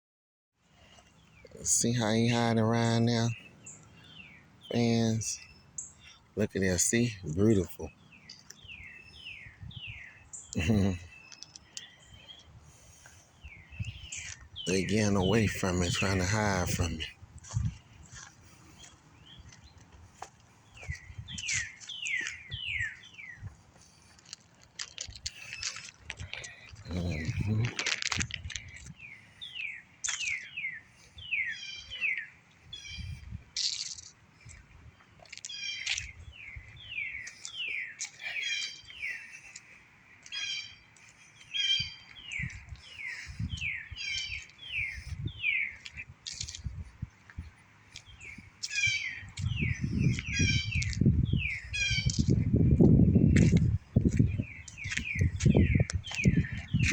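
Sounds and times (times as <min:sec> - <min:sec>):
songbird whistling: 0:20.8 - 0:23.5
harsh buzzy bird calls: 0:48.0 - 0:53.3.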